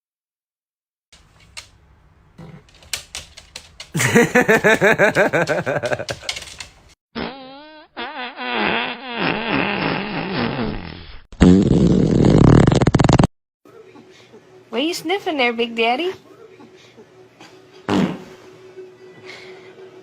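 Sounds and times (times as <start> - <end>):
sputtering fart: 7.2 - 13.3, 17.9 - 18.5.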